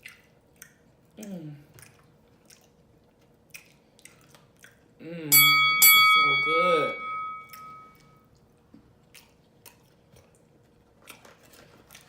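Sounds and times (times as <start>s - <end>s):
wet chewing: 0.0s - 5.0s, 7.5s - 12.0s.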